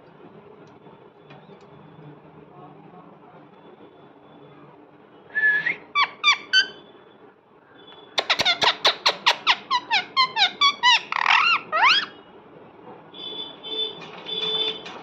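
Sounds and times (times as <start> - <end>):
parrot squawking and screeching: 5.7 - 6.9, 8.2 - 12.3.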